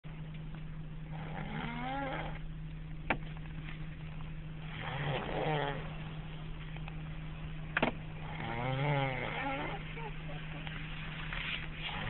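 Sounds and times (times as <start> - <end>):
child snoring: 1.1 - 2.4, 4.7 - 6.0, 8.2 - 10.0.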